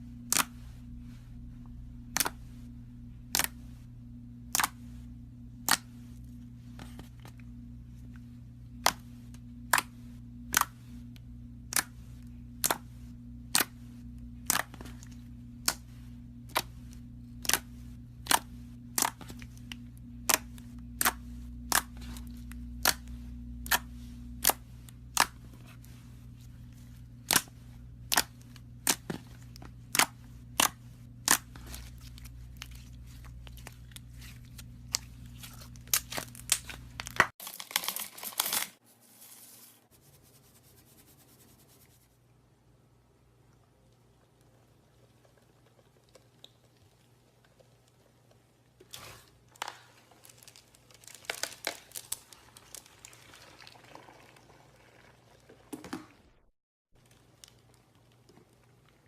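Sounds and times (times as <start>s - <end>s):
steady low hum: 0.0s - 37.4s.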